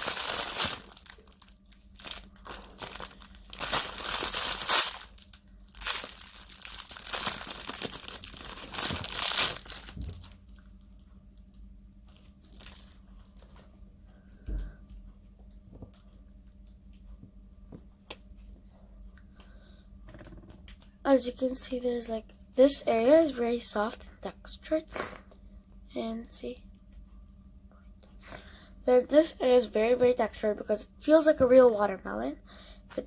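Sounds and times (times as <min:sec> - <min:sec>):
plastic packaging crinkling and tearing: 0:00.0 - 0:10.6, 0:12.1 - 0:13.6.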